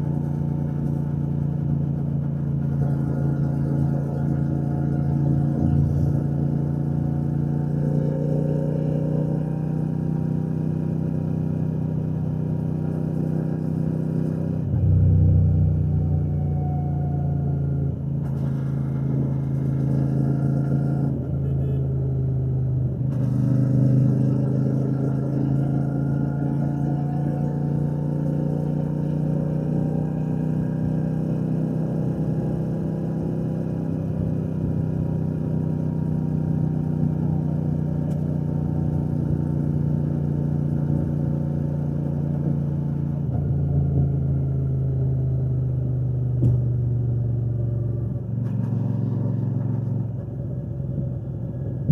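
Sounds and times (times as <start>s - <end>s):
motorcycle engine running: 0.0s - 17.0s, 17.9s - 51.9s.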